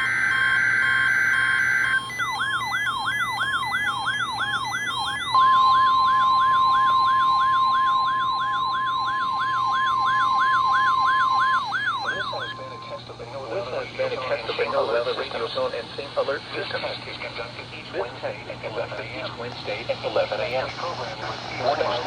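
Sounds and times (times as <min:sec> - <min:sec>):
electronic alarm sweeping up and down: 0:00.0 - 0:13.0
steady warning tone: 0:00.0 - 0:22.0
warbling data tones: 0:00.0 - 0:22.0.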